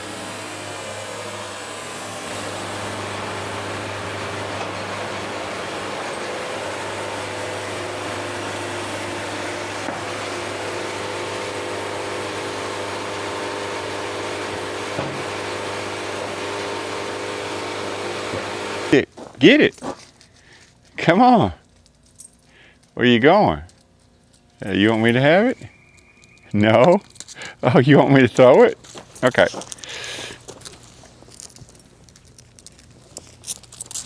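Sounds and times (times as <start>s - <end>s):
engine hum: 0.0s - 19.0s
whir of saw band: 0.0s - 19.0s.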